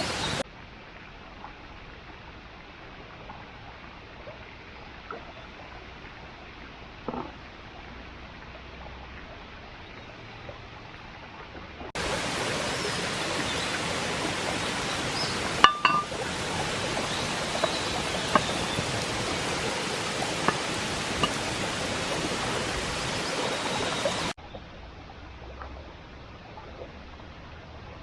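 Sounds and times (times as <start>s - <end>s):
sizzling hiss: 12.0s - 24.4s
metallic clink: 15.6s - 16.2s.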